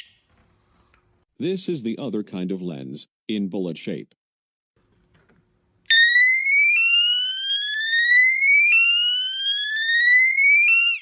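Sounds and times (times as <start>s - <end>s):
fire alarm sweep tone: 5.9s - 11.0s.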